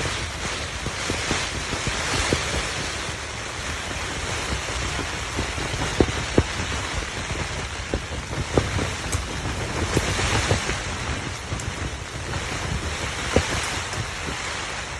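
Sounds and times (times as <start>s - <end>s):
heavy rain hissing: 0.0s - 14.9s
raindrops tapping a surface: 0.0s - 14.9s
wind rumble on microphone: 0.0s - 14.9s.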